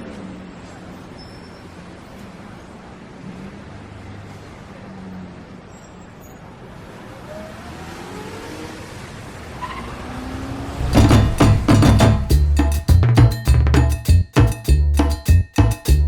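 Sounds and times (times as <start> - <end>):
street traffic rumble: 0.0 - 13.8
vehicle engine accelerating: 7.2 - 12.3.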